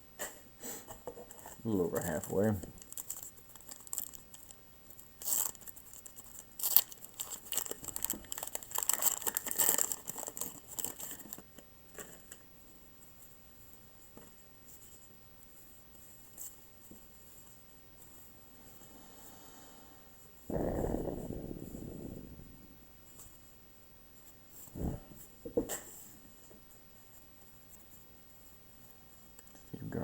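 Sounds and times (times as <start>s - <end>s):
wax paper wrapper crinkling and tearing: 1.3s - 11.5s.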